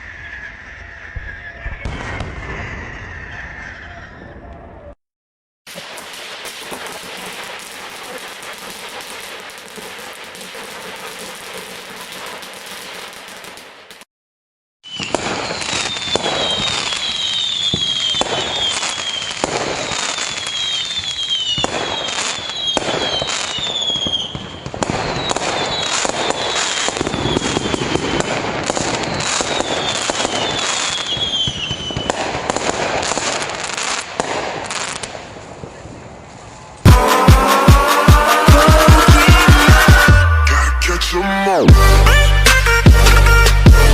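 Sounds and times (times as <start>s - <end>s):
falling fireworks whistles: 0.0s - 5.0s, 5.7s - 14.1s, 14.8s - 40.3s
fireworks bangs: 0.0s - 5.0s, 5.7s - 14.1s, 14.8s - 40.4s
fireworks crackling: 5.7s - 14.1s, 14.9s - 40.4s.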